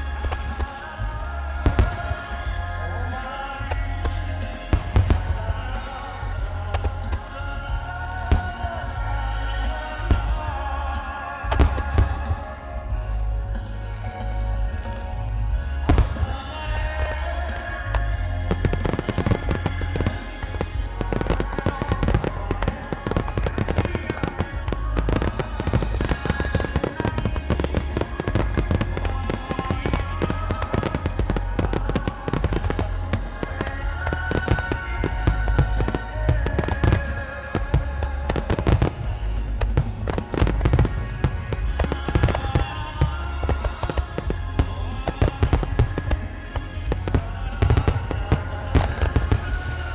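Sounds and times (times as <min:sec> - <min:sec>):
fireworks bursts and crackling: 0:00.0 - 0:49.9
loud music from loudspeakers: 0:00.0 - 0:49.9
deep fireworks booms: 0:00.2 - 0:49.9.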